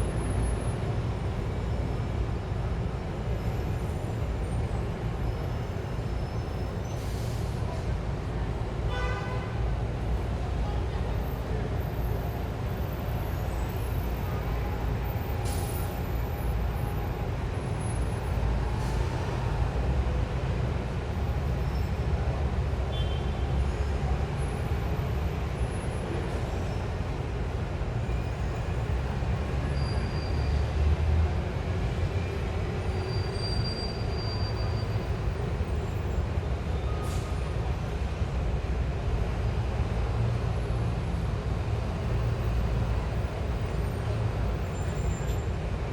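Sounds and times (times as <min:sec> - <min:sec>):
rumble of passing vehicles: 0:00.0 - 0:45.9.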